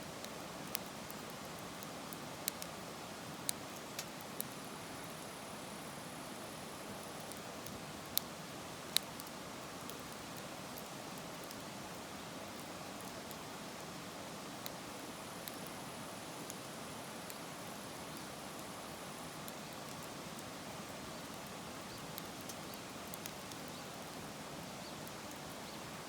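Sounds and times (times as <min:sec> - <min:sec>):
campfire crackling and popping: 0:00.1 - 0:05.3, 0:06.9 - 0:26.0.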